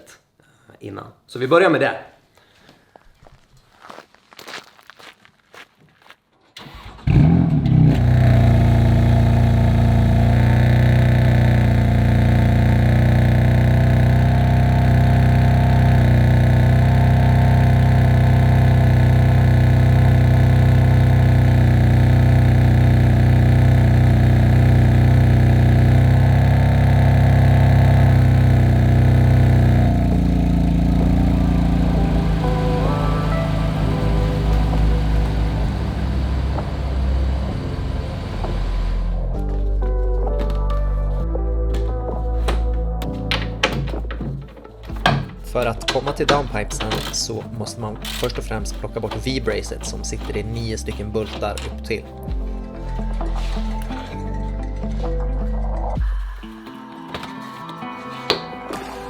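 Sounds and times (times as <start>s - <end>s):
car engine starting and idling: 6.6s - 39.8s, 44.9s - 56.0s.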